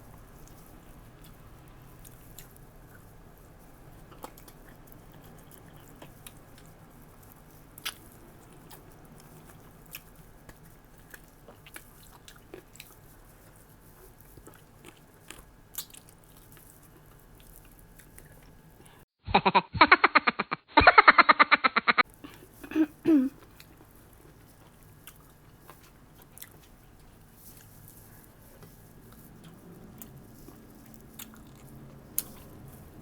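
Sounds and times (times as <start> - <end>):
person chewing and biting: 4.0 - 18.6, 23.4 - 32.9.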